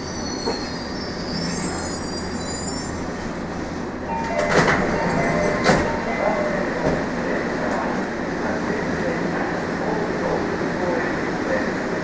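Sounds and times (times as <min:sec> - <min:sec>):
train wheels squealing on rail: 0:00.0 - 0:03.3
train running rumble: 0:00.0 - 0:12.0.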